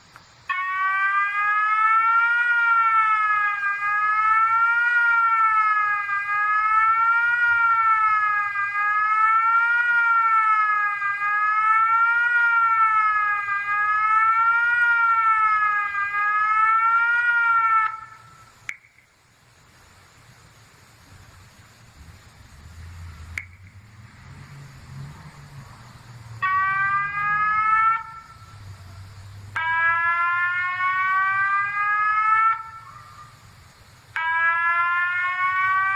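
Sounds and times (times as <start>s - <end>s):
siren wailing: 0.5s - 18.6s, 26.2s - 33.4s, 34.2s - 35.9s
different siren signal: 0.5s - 18.8s, 22.8s - 35.9s.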